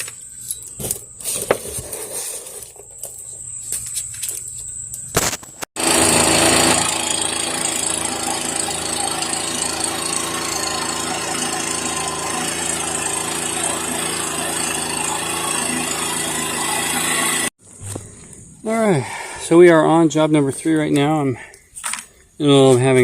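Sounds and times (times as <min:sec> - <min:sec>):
leaf blower running: 0:05.8 - 0:18.4.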